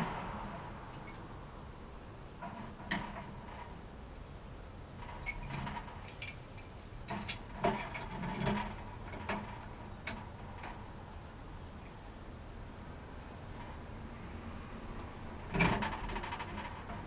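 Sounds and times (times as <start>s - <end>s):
wrench clicking and knocking on metal: 5.0s - 10.8s.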